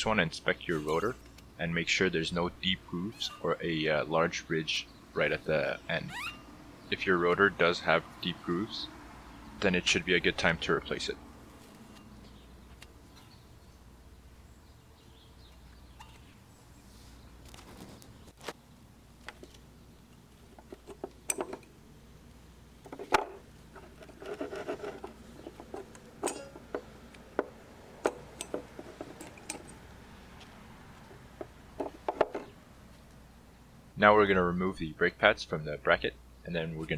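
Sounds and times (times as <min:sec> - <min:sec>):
metal tools clinking: 0:20.6 - 0:21.7, 0:22.9 - 0:32.6
metal parts rubbing and clattering: 0:22.9 - 0:27.1, 0:28.0 - 0:29.9.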